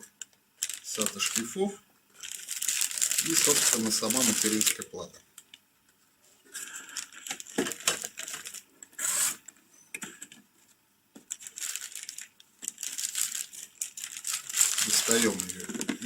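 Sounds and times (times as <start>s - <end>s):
plastic packaging crinkling: 0.6s - 1.6s, 2.2s - 5.6s, 6.6s - 9.4s, 11.2s - 16.0s.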